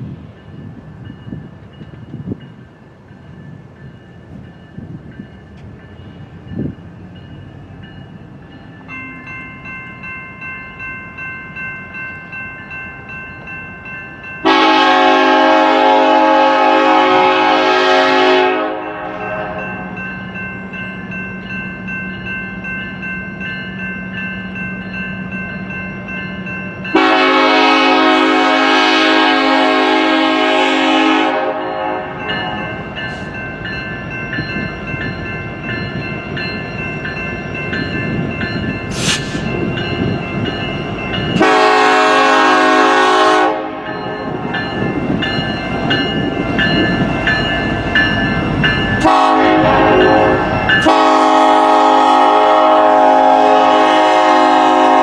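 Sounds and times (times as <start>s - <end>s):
rumble of moving train: 0.0s - 55.0s
locomotive air horn blasts: 14.4s - 19.8s, 26.9s - 32.8s, 41.4s - 44.0s, 49.0s - 55.0s.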